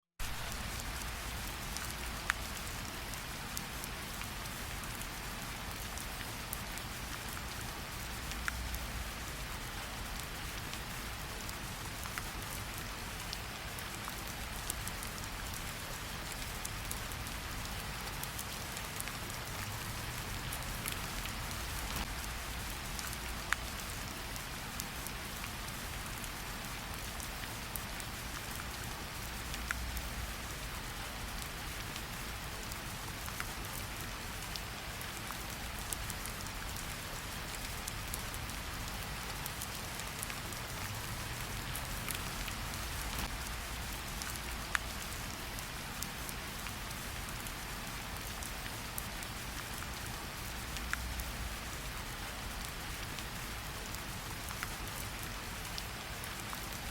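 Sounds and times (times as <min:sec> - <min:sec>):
rain on a window: 0:00.2 - 0:56.9
raindrop ticks: 0:11.4 - 0:30.4, 0:31.1 - 0:45.6, 0:46.2 - 0:51.6.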